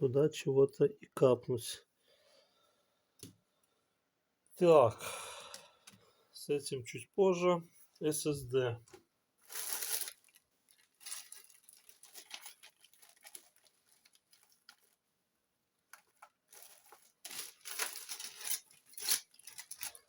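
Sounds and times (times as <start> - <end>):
hands rummaging through small objects: 9.5 - 15.0, 15.9 - 20.0.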